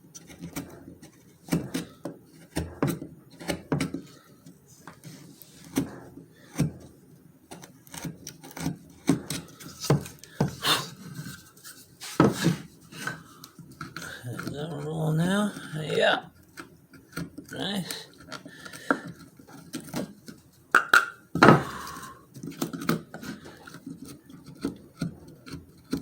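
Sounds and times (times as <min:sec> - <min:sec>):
short scrapes: 0:09.7 - 0:13.2
wood pieces knocking together: 0:20.8 - 0:22.1.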